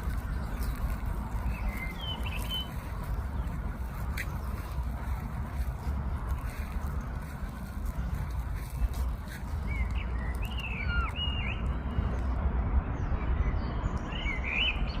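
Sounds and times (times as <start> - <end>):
wind rumble on microphone: 0.0 - 15.0
animal chirping calls: 10.5 - 11.6.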